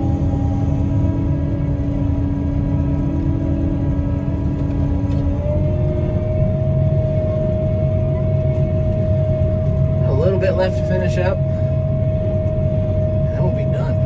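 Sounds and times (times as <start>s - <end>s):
combine harvester running: 0.0s - 14.0s.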